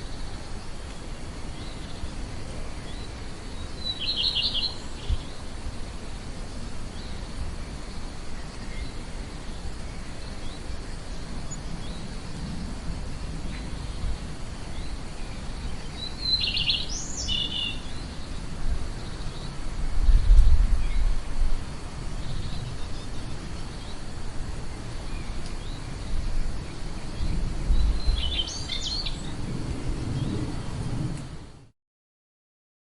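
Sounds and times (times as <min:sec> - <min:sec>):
background hiss: 0:00.0 - 0:31.7
songbird trilling and whistling: 0:02.9 - 0:05.4, 0:15.7 - 0:18.2, 0:27.2 - 0:29.3.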